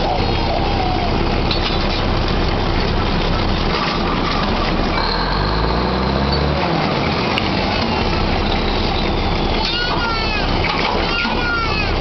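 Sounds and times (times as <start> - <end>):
drilling rig machinery clatter: 0.0 - 12.0
deep engine note rising: 4.9 - 9.6.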